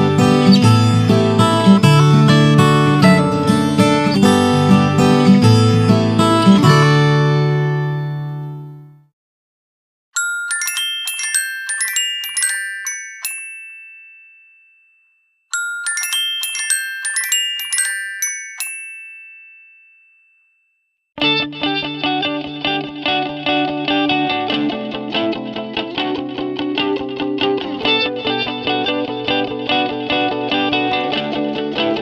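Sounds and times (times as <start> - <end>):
strummed acoustic guitar ringtone: 0.0 - 8.8, 10.2 - 14.4
bell-like chime ringtone: 10.2 - 21.0.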